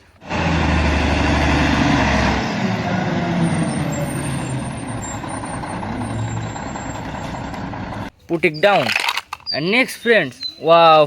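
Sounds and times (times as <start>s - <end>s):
truck engine rumble: 0.0s - 8.2s.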